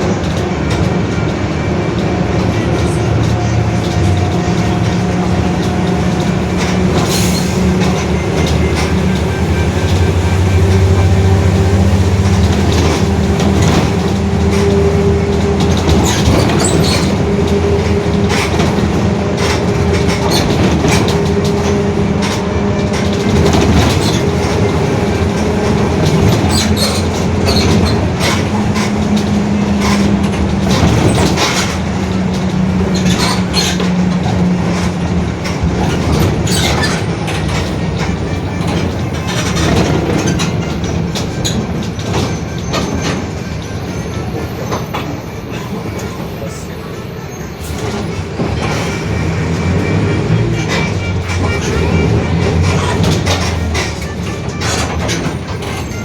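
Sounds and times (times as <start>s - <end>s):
bus differential droning: 0.0s - 56.0s
road rumble: 0.0s - 56.0s
rattles and knocks: 11.6s - 43.4s.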